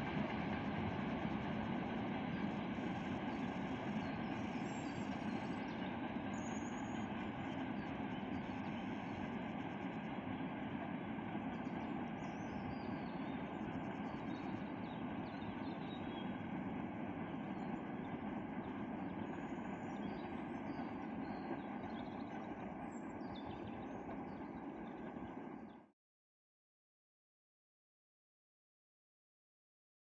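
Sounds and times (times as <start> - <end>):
faint birds chirping: 2.2 - 25.9
freight train rumbling: 11.8 - 25.7.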